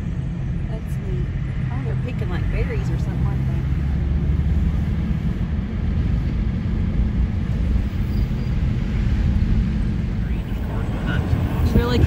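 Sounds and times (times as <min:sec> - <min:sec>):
car road noise rumble: 0:00.0 - 0:12.0.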